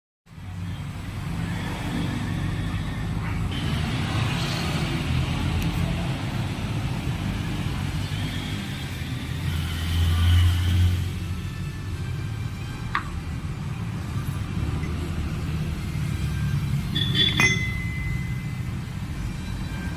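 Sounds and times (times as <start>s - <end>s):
car engine humming: 11.9s - 19.9s.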